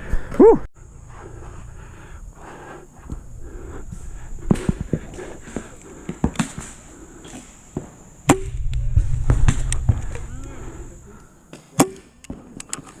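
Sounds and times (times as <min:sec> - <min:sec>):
paintballs striking: 0:06.0 - 0:11.0
low rumble: 0:08.3 - 0:11.2.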